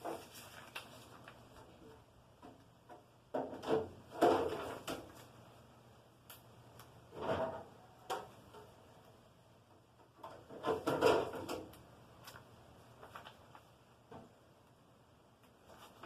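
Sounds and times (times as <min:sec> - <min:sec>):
packaging rustling and scraping: 0:00.0 - 0:01.4.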